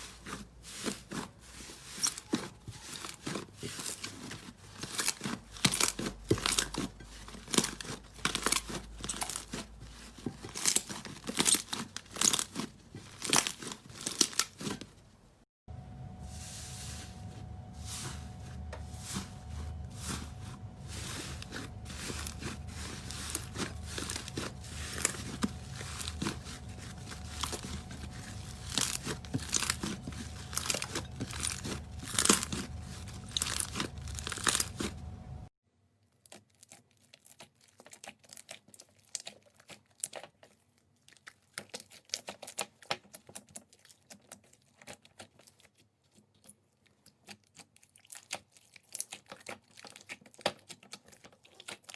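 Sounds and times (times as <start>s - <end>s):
slime crackling and popping: 10.4s - 14.7s, 21.2s - 35.4s.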